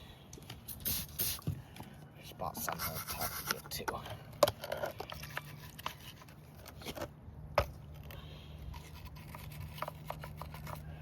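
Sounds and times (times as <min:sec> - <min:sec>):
brush scrubbing plastic housing: 0:02.6 - 0:03.9, 0:08.7 - 0:11.0.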